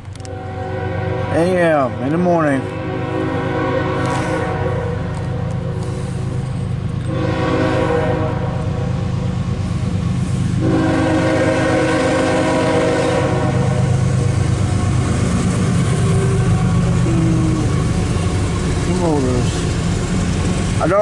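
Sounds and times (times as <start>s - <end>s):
locomotive air horn blasts: 0.2s - 6.1s, 7.1s - 9.0s, 10.6s - 14.1s
low rumble: 13.5s - 21.0s.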